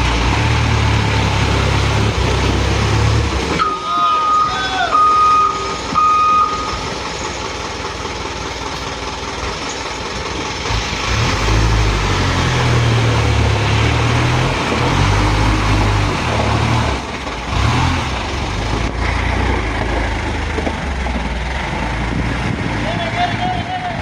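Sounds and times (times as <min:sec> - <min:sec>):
diesel truck engine running: 0:00.0 - 0:24.0
short high beeps: 0:03.6 - 0:06.8.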